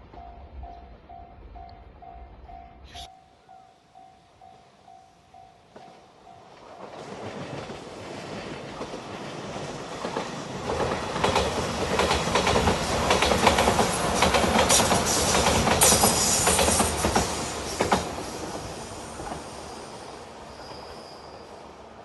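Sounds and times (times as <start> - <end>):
faint level-crossing bell: 0.0 - 6.5
train passing: 0.0 - 22.0.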